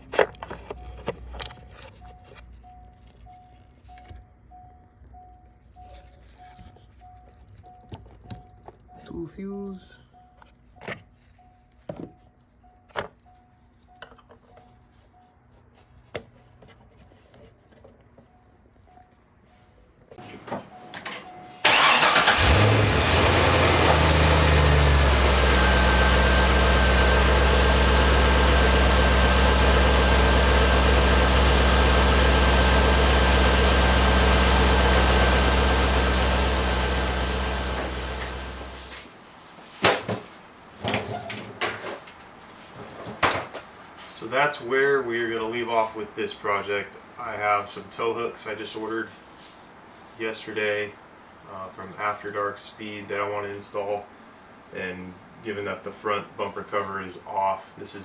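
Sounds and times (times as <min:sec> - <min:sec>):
car engine starting and idling: 0:21.6 - 0:39.0.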